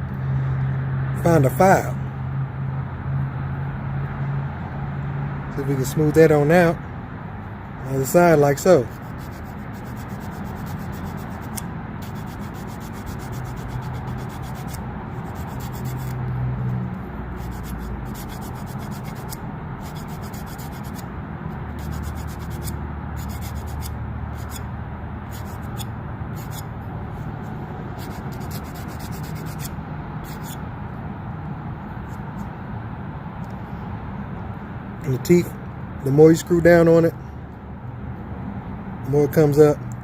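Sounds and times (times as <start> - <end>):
file rasping on plastic: 8.9 - 16.2, 17.4 - 21.0, 21.8 - 24.6, 25.3 - 26.6, 28.0 - 30.6.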